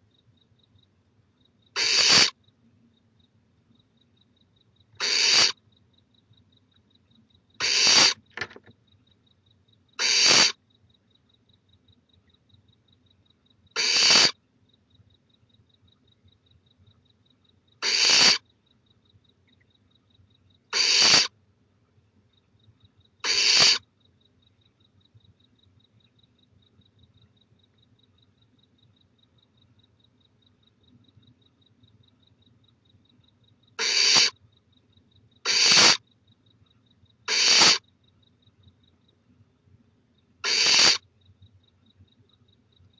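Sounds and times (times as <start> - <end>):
owl chick hissing calls: 1.8 - 2.4, 5.0 - 5.6, 7.6 - 8.2, 10.0 - 10.6, 13.8 - 14.4, 17.8 - 18.4, 20.7 - 21.3, 23.2 - 23.8, 33.8 - 34.4, 35.5 - 36.0, 37.3 - 37.8, 40.4 - 41.0
owlet hissing: 7.6 - 8.2, 33.8 - 34.3, 35.5 - 36.0, 37.3 - 37.8, 40.5 - 41.0.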